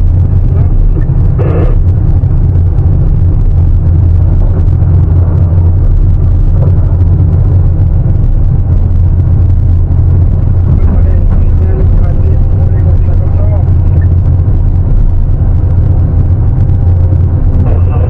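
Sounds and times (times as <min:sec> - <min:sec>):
excavator diesel engine rumbling: 0:00.0 - 0:18.0.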